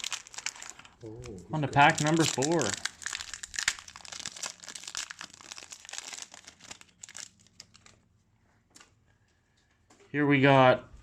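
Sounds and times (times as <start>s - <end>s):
foil wrapper crinkling and tearing: 0.0s - 8.0s.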